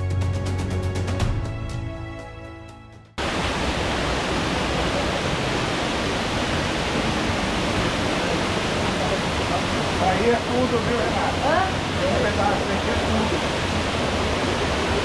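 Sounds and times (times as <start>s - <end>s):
background music: 0.0s - 3.2s
waterfall rushing: 3.2s - 15.0s.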